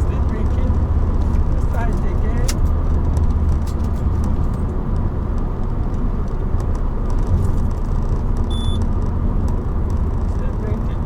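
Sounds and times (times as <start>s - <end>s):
car engine and tyres rumbling: 0.0s - 11.0s
short high beep: 8.5s - 8.8s.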